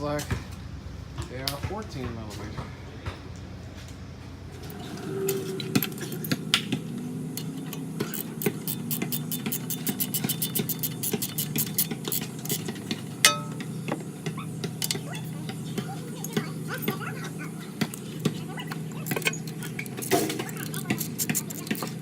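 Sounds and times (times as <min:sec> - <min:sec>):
steady low hum: 0:00.0 - 0:22.0
ratchet wrench clicking: 0:07.4 - 0:12.7, 0:18.9 - 0:22.0
metallic clink: 0:13.2 - 0:13.6.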